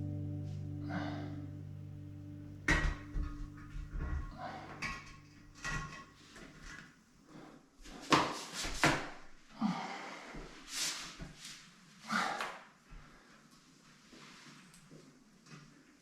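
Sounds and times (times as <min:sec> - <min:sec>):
knocks and scrapes of sink fittings: 0:04.0 - 0:06.1.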